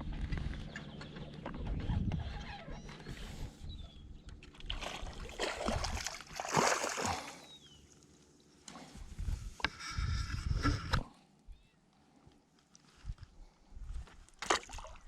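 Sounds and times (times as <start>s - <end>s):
water splashing against boat: 4.5s - 7.5s.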